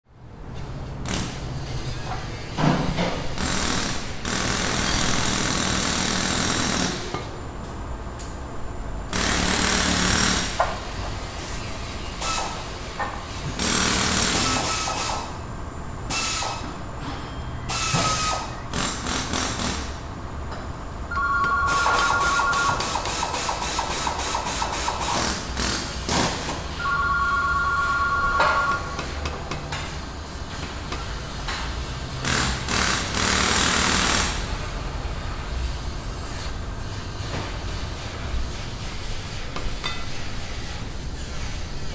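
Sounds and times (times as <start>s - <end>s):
tool rattling with rapid hammering: 9.1s - 10.8s, 13.5s - 15.3s, 22.5s - 26.6s, 32.2s - 34.4s.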